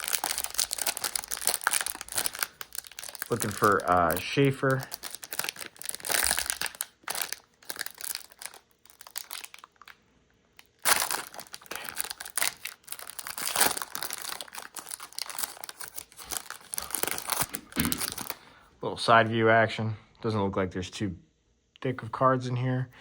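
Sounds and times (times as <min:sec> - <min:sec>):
wrapper crinkling and tearing: 0:00.0 - 0:10.0, 0:10.6 - 0:18.4.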